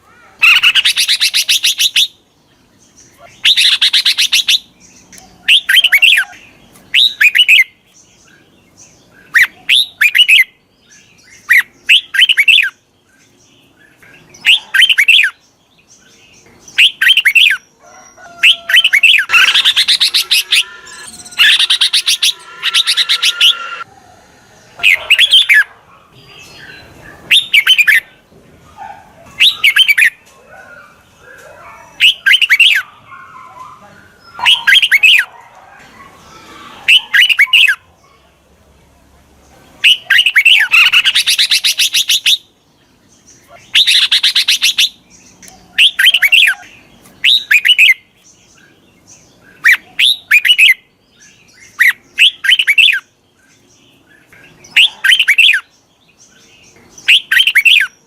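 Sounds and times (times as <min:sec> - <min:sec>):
bird chattering: 0:00.4 - 0:02.1, 0:18.4 - 0:23.8
bulbul whistled calls: 0:18.4 - 0:23.9, 0:54.7 - 0:55.7, 0:57.0 - 0:57.9.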